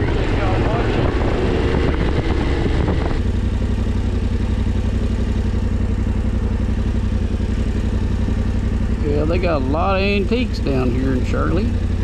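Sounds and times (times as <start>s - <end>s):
wind rush on microphone: 0.0s - 3.3s
motorcycle engine idling: 0.0s - 12.0s.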